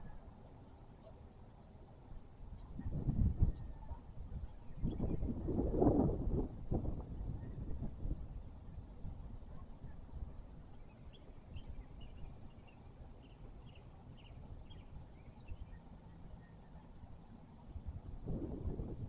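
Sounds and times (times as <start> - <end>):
high insect drone: 0.0 - 19.0
wind rumble on microphone: 2.5 - 10.6, 17.6 - 19.0.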